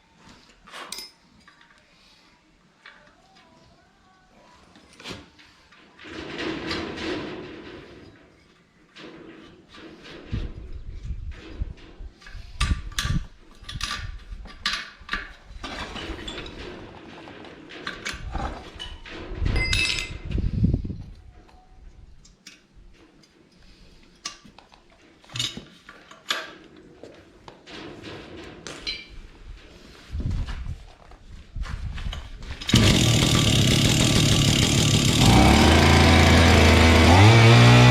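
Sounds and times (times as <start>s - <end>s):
metal tools clinking and knocking: 0.8s - 1.7s, 17.8s - 20.3s.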